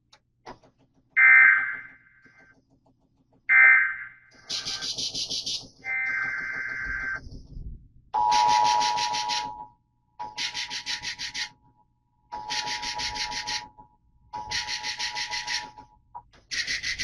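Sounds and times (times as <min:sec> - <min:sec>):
buzzing data bursts: 0:14.4 - 0:15.8.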